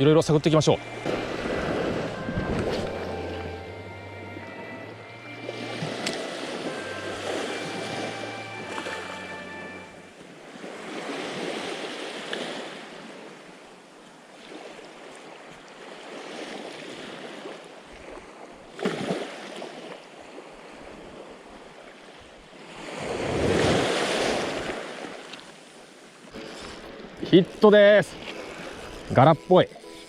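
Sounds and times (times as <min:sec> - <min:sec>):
waves washing against rocky shore: 0:00.3 - 0:02.9
sharp splash: 0:00.8 - 0:03.4, 0:18.7 - 0:19.8.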